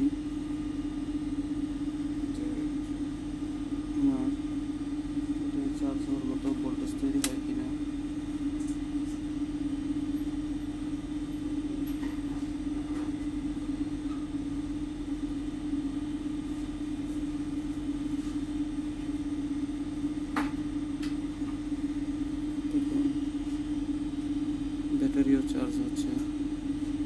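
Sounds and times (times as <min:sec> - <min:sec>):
steady low hum: 0:00.0 - 0:27.0
sharp click: 0:07.2 - 0:07.4.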